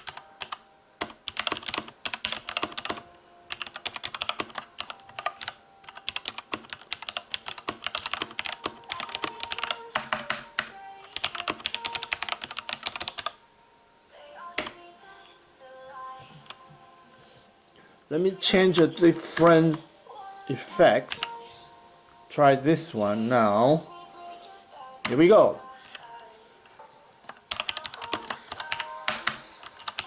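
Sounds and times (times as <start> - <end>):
fast typing on mechanical keyboard: 0.0 - 13.4, 27.5 - 30.0.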